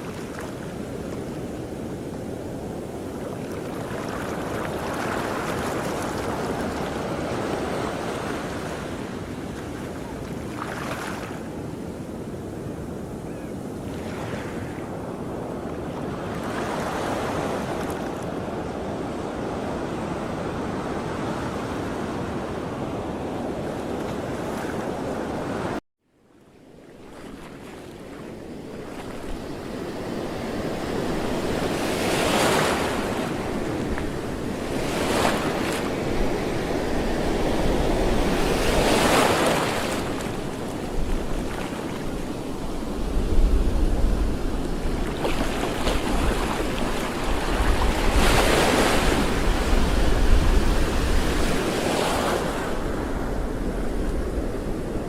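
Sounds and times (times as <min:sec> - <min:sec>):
waves: 0:00.0 - 0:55.0
wind gusts: 0:27.1 - 0:55.0.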